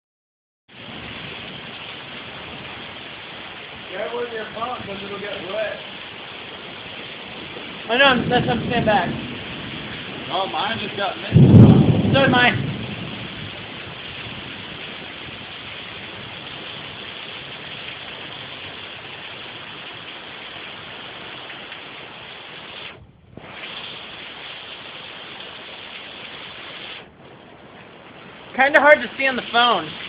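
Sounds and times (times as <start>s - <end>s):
heavy rain pouring: 0.7s - 30.0s.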